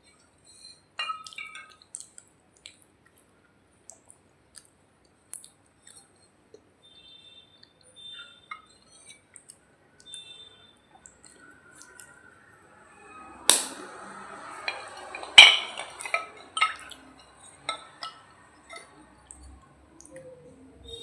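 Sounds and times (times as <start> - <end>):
small clicks and crackles: 0.0 - 6.6
sharp snaps: 13.5 - 14.0.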